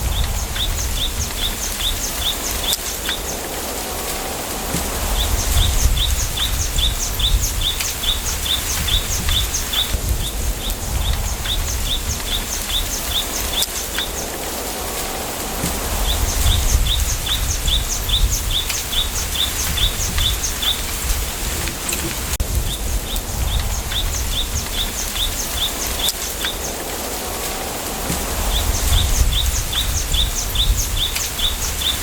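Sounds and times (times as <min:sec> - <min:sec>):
wind through bamboo: 0:00.0 - 0:32.0
bird chirping: 0:15.9 - 0:27.2, 0:28.1 - 0:32.0.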